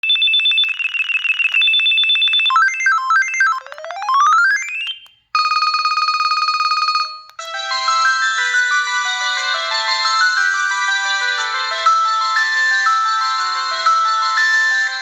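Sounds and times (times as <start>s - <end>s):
electronic ringtone trill: 0.1s - 15.0s
stepped beeping melody: 2.6s - 5.5s, 7.4s - 15.0s.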